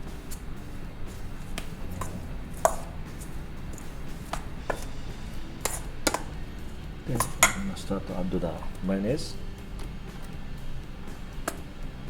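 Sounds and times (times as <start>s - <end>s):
utensil clinking against bowl: 1.0s - 8.8s.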